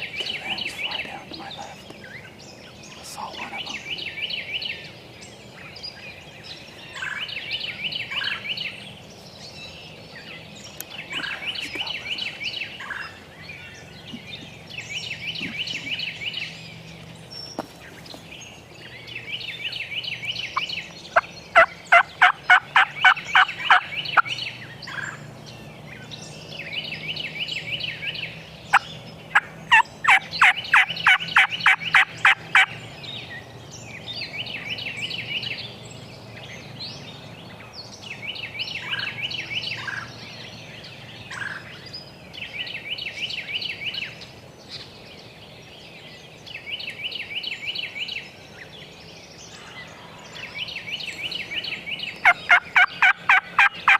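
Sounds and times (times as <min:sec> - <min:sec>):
wild turkeys gobbling: 0:21.1 - 0:23.9, 0:28.7 - 0:32.7, 0:52.2 - 0:53.9.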